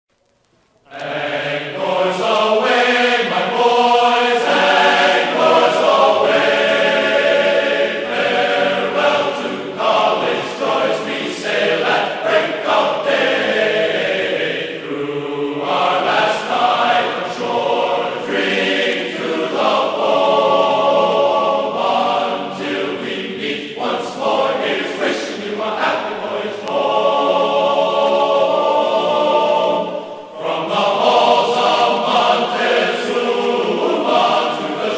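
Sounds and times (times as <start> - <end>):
chorus of voices chanting: 0.9 - 34.9.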